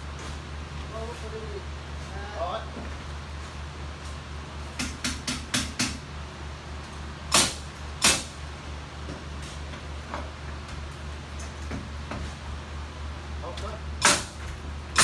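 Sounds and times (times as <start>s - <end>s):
steady low hum: 0.0s - 15.0s
loud sharp nailing bangs: 4.8s - 6.0s, 7.3s - 8.4s, 14.0s - 15.0s.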